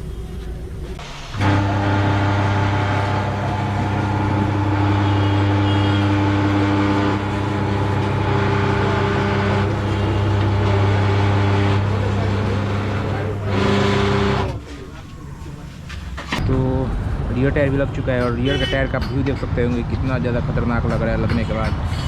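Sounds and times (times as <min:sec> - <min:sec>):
machinery humming: 0:00.2 - 0:16.4.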